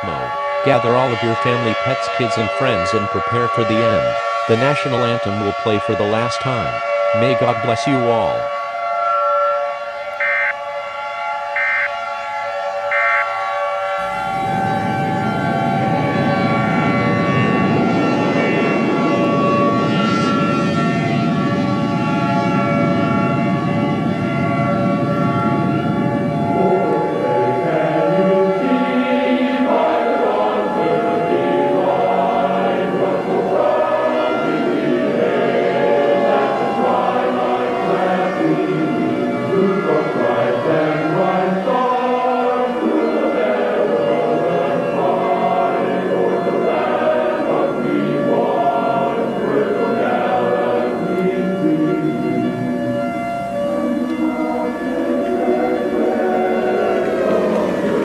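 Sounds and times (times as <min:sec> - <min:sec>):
choral singing: 0:00.0 - 0:08.4, 0:10.1 - 0:10.6, 0:11.5 - 0:24.1, 0:24.9 - 0:58.0
siren-like drone of held tones: 0:00.0 - 0:58.0
short high beeps: 0:10.2 - 0:10.6, 0:11.6 - 0:12.0, 0:12.9 - 0:13.3
loud low rumbling noise: 0:14.0 - 0:27.0.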